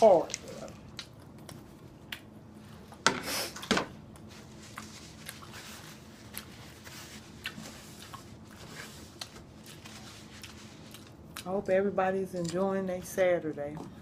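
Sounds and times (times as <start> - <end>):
soft chewing: 4.1 - 11.7.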